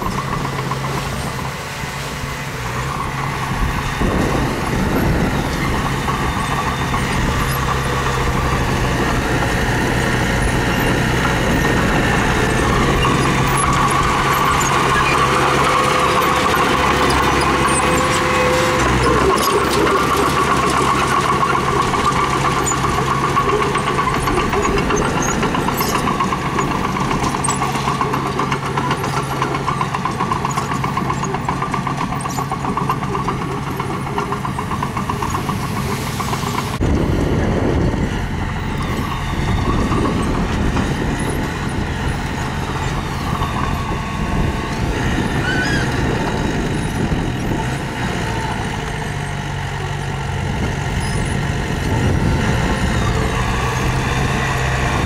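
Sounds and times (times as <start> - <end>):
diesel engine running: 0.0 - 55.0.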